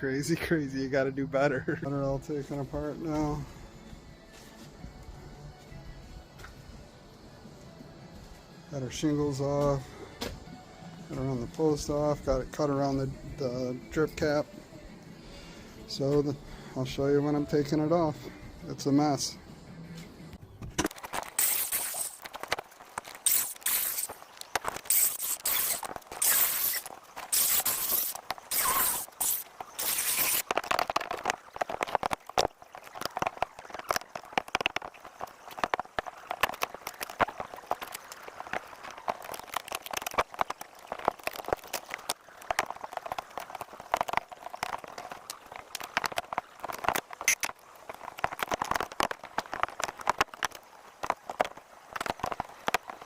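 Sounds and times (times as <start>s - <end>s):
boards crunching and scraping: 20.6s - 53.0s.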